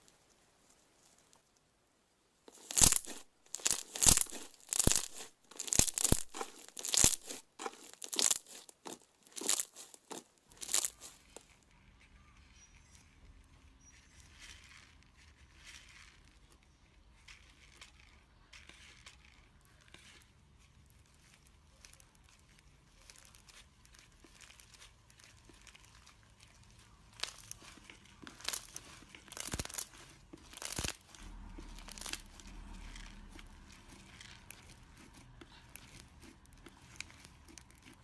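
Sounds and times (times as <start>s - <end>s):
slime popping: 2.5s - 11.3s, 23.0s - 38.0s
slime squeezed by hand: 2.5s - 11.4s, 23.0s - 38.0s.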